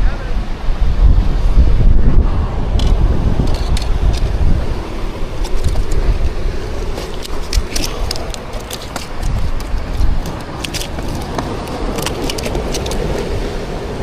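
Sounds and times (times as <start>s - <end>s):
beach surf: 0.0s - 14.0s
wind rumbling on microphone: 0.0s - 14.0s
sharp clicks and crackles: 2.8s - 4.4s, 5.3s - 13.3s.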